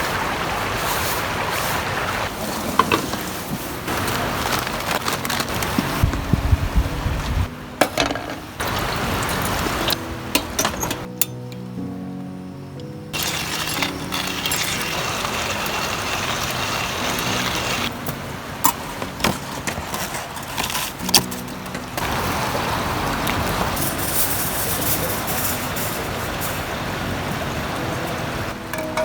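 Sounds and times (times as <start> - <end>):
steady rushing noise: 0.0 - 7.7
background music: 2.3 - 29.0.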